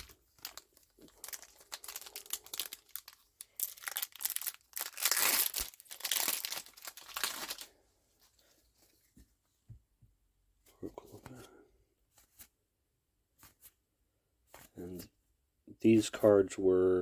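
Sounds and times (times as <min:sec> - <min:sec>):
foil wrapper crinkling and tearing: 0:00.0 - 0:07.7.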